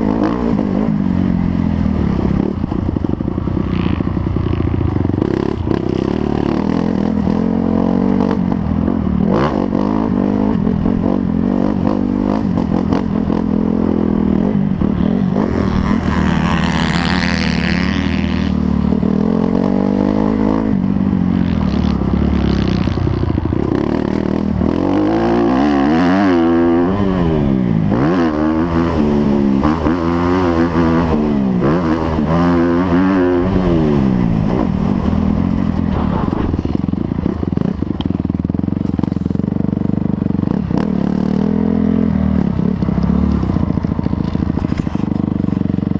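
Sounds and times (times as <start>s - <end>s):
motocross motorcycle engines running: 0.0s - 45.9s
engine revving up and down: 14.2s - 18.6s.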